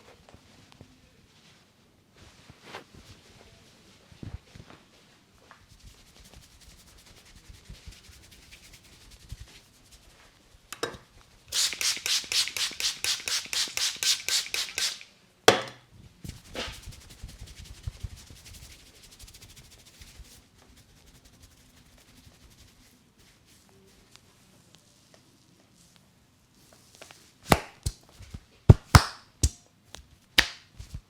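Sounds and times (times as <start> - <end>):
hands rubbing skin: 5.8 - 10.1, 11.5 - 15.1, 16.3 - 23.6, 27.1 - 29.6
hands slapping head: 11.6 - 15.8, 27.5 - 28.1, 28.7 - 31.0
loud hand snap: 27.5 - 28.1, 28.7 - 29.7, 30.4 - 30.7.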